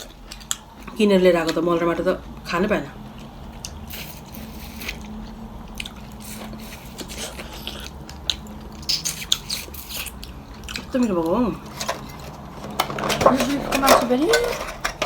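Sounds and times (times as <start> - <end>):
person chewing food: 0.0 - 1.0, 3.0 - 12.6.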